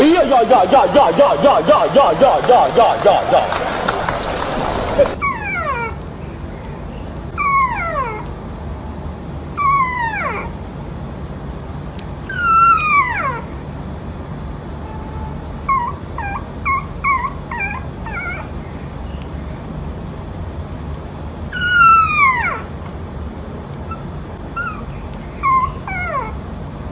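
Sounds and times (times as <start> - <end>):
dog whining: 2.7 - 6.0, 7.4 - 8.4, 9.5 - 10.5, 12.3 - 13.6, 15.6 - 18.8, 21.5 - 22.7, 23.8 - 26.4
dog yipping: 3.3 - 6.0, 7.4 - 8.3, 9.5 - 10.5, 12.3 - 13.6, 15.6 - 18.9, 21.5 - 22.8, 23.8 - 26.4.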